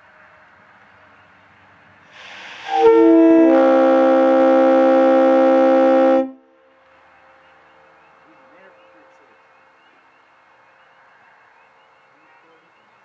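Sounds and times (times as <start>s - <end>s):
rush of air: 2.0s - 2.9s
three-chime air horn blast: 2.2s - 6.4s.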